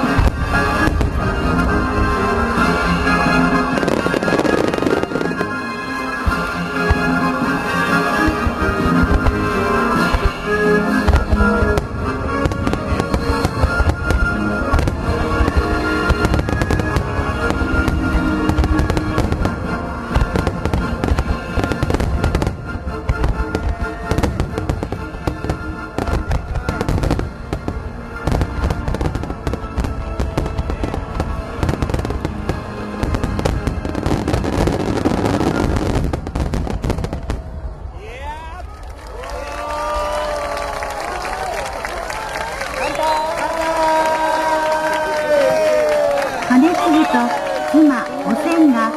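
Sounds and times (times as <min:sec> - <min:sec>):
music playing: 0:00.0 - 0:37.1, 0:40.3 - 0:48.9
firework bursts and crackling: 0:00.0 - 0:38.0.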